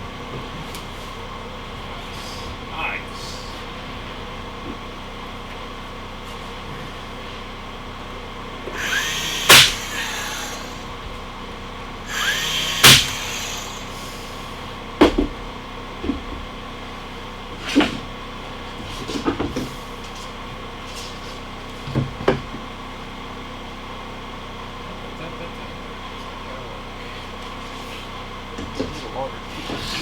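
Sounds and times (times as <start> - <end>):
power drill whirring: 8.7 - 11.0, 12.0 - 14.6
sharp loud crack: 8.8 - 10.7, 12.1 - 13.8.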